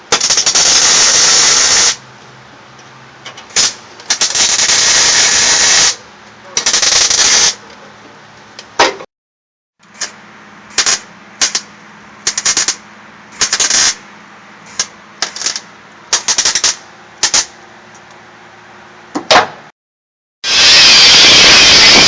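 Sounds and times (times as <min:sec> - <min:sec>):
welder crackling bursts: 0:00.1 - 0:02.0, 0:03.5 - 0:06.0, 0:06.6 - 0:07.6, 0:09.8 - 0:12.8, 0:13.4 - 0:14.0, 0:14.7 - 0:17.6, 0:20.4 - 0:22.0
welder hum: 0:00.1 - 0:02.0, 0:20.4 - 0:22.0.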